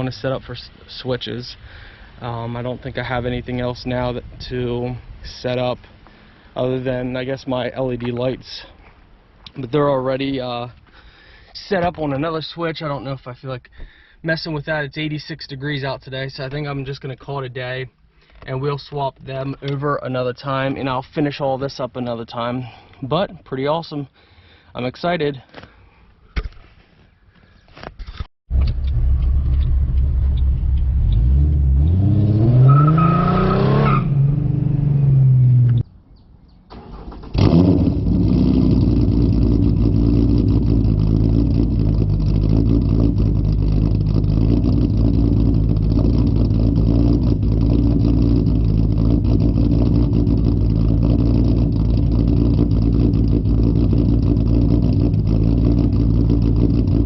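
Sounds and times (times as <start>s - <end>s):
car engine revving and idling: 28.5s - 35.8s, 37.3s - 57.0s.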